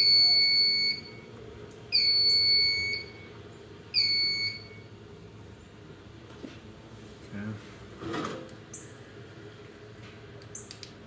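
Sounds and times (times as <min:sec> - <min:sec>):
alarm panel buzzer beeping: 0:00.0 - 0:01.3, 0:01.9 - 0:04.9.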